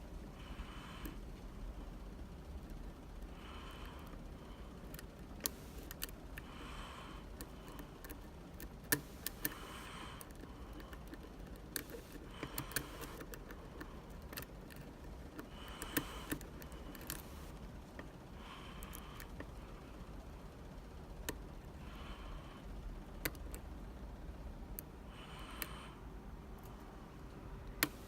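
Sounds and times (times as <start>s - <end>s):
soft nose breathing: 0.3s - 2.0s, 3.2s - 8.3s, 8.9s - 20.2s, 21.6s - 22.8s, 25.0s - 26.1s.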